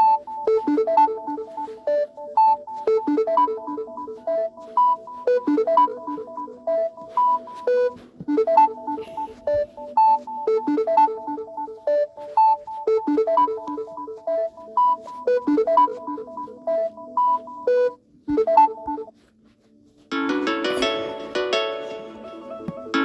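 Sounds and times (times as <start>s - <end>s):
phone ringtone melody: 0.0s - 19.2s, 20.1s - 23.0s.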